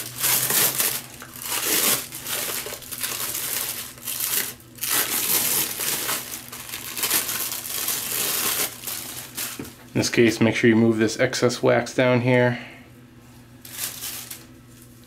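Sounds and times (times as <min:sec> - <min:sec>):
wax ring crinkling and rustling: 0:00.0 - 0:10.0, 0:13.6 - 0:15.0.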